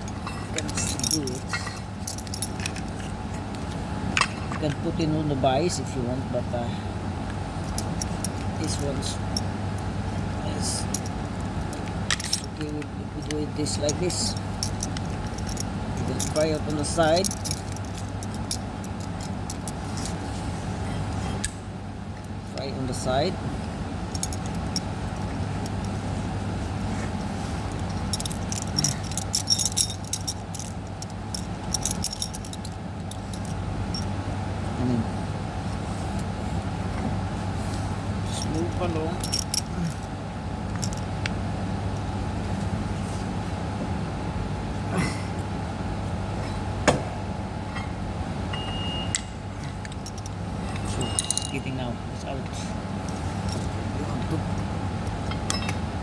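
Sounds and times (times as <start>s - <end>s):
sharp metal clinks: 0.0s - 2.8s, 10.5s - 20.2s, 24.1s - 26.0s, 27.7s - 34.1s, 38.3s - 40.1s, 49.9s - 51.9s
steady low hum: 0.0s - 56.0s
metal clicking and scraping: 27.6s - 34.1s.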